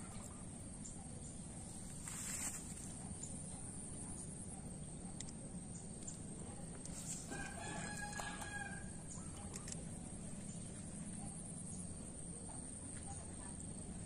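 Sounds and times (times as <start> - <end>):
steady low background noise: 0.0 - 14.0.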